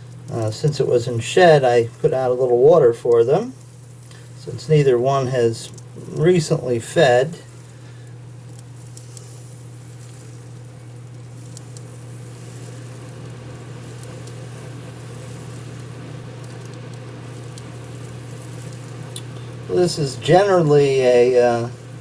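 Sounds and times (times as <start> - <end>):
background hiss: 0.0 - 22.0
low electrical hum: 0.0 - 22.0
faint ticks: 8.5 - 9.4, 13.9 - 14.4.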